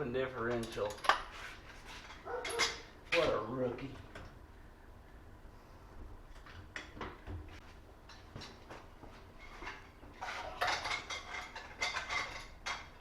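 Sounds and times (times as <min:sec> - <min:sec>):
metal tools clinking: 0:00.4 - 0:01.3, 0:02.0 - 0:03.4, 0:09.6 - 0:13.0.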